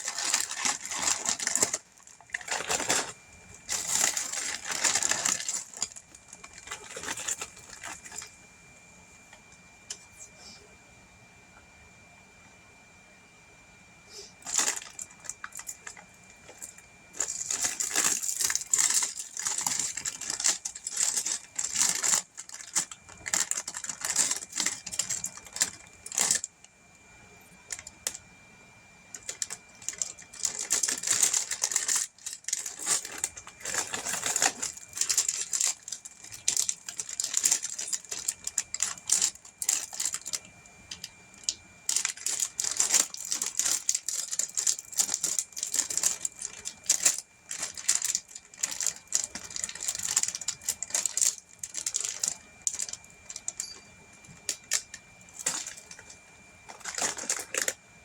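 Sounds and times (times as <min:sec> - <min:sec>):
plastic pieces clicking and rattling: 0:00.0 - 0:08.2, 0:17.2 - 0:26.4, 0:29.2 - 0:41.0, 0:41.9 - 0:53.8, 0:54.4 - 0:56.1, 0:56.7 - 0:57.8.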